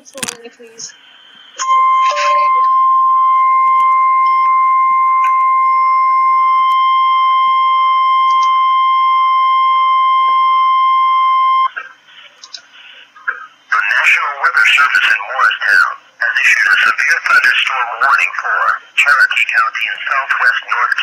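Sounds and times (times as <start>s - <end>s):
high-pitched warning alarm tone: 1.6s - 11.7s.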